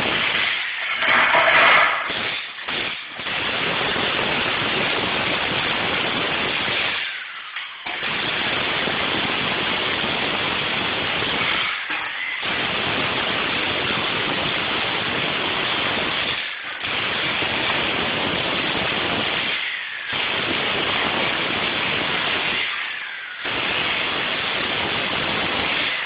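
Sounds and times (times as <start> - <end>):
jackhammer rattling: 0.2 - 3.4.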